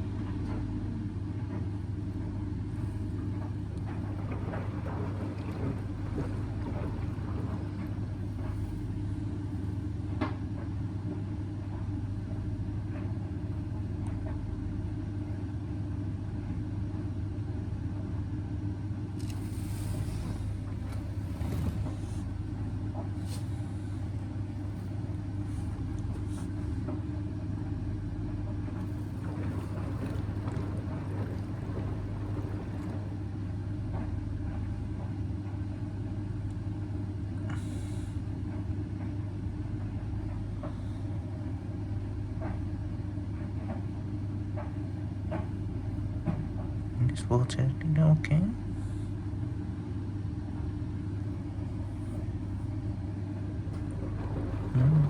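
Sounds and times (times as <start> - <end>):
washing machine drum tumbling: 2.6 - 14.3, 19.4 - 38.0, 39.6 - 47.6, 51.0 - 55.0.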